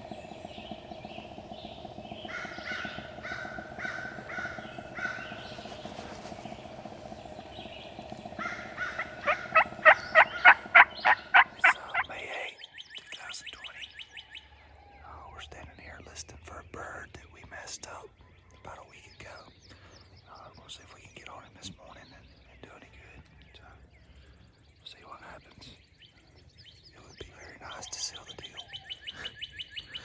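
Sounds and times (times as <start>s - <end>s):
steady hum: 0.0s - 12.5s
turkey yelps: 2.3s - 6.3s, 8.0s - 12.1s.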